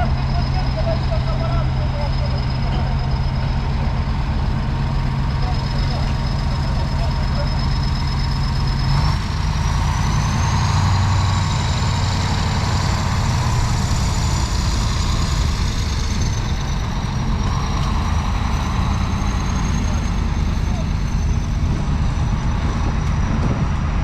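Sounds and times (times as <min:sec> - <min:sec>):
diesel machinery running: 0:00.0 - 0:24.0.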